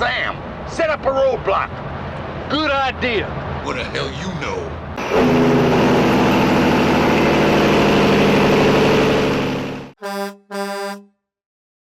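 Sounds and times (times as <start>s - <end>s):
vehicle engine running: 5.0s - 11.0s
horn honks: 10.0s - 11.2s.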